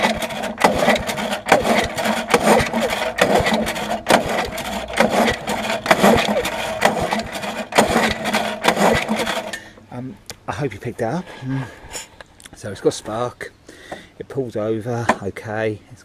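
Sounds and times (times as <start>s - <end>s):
mower engine pull-starter cranking: 0.0s - 9.8s.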